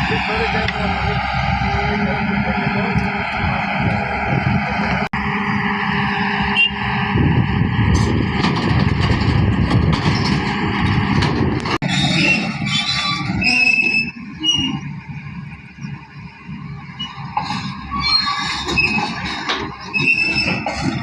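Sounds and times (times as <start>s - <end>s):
vehicle engine running: 0.0s - 12.2s.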